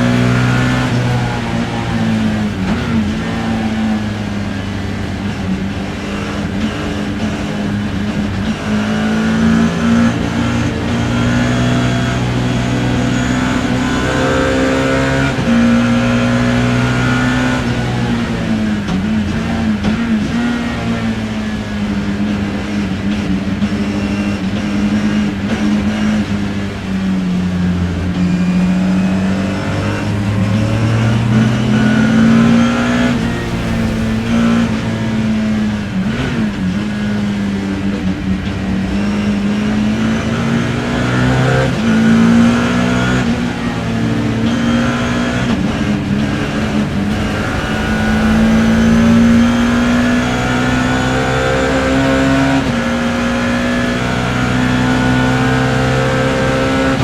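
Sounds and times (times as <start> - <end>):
race car engine revving: 30.5 - 36.7, 41.7 - 57.0.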